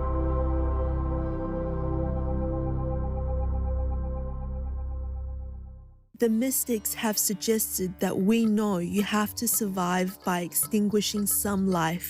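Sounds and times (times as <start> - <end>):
ambient synthesizer music: 0.0 - 6.3.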